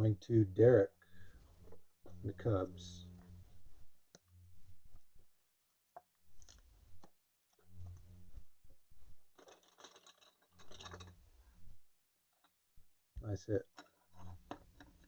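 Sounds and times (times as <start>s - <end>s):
foil wrapper tearing and crinkling: 9.4s - 11.0s
cards clicking and rustling: 9.4s - 11.1s.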